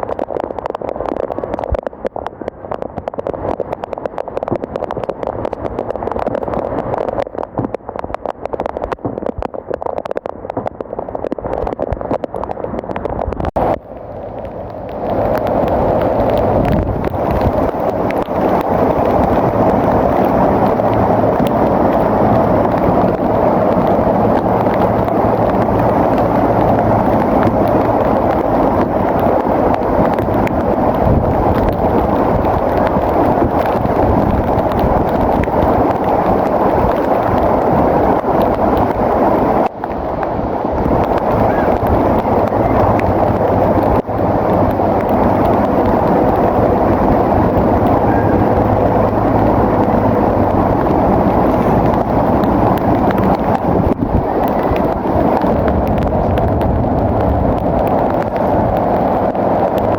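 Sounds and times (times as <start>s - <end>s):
dense rushing noise: 0.0s - 59.9s
bulldozer diesel engine running: 13.6s - 39.4s, 40.2s - 59.9s.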